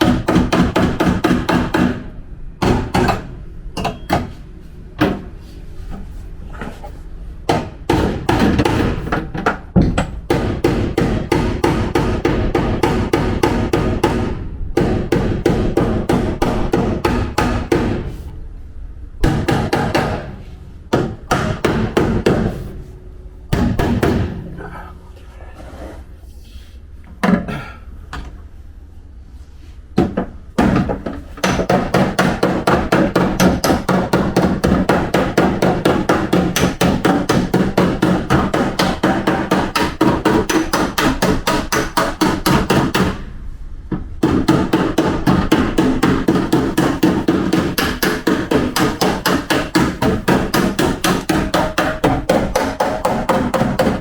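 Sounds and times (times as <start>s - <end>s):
hammer striking steel panel: 7.5s - 18.1s, 19.2s - 22.7s, 23.5s - 24.6s, 30.0s - 43.2s, 44.2s - 54.0s.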